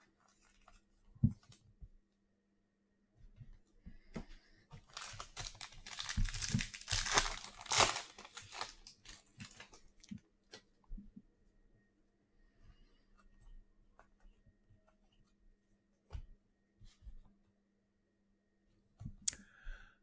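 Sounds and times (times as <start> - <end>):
cards clicking and rustling: 4.9 - 9.8
wrapper tearing and crinkling: 4.9 - 9.8.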